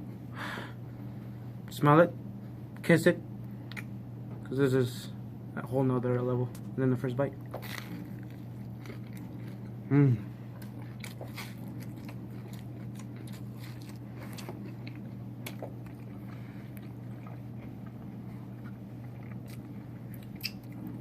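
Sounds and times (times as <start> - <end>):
steady low hum: 0.0 - 21.0
chewing crunchy pizza crust: 6.5 - 21.0.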